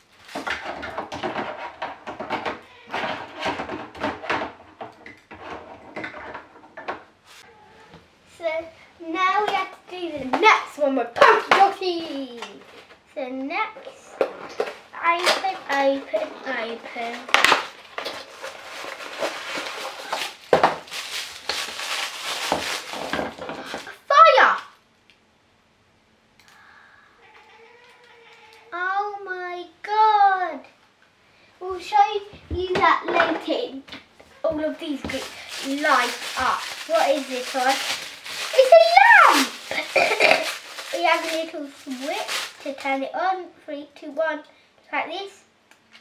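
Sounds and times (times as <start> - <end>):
plastic toy pieces rustling and clicking: 13.9 - 24.0, 34.6 - 43.1.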